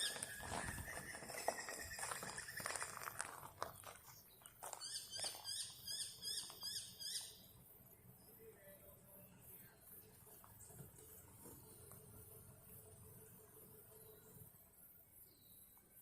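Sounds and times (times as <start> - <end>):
animal high-pitched calls: 0.0 - 3.1.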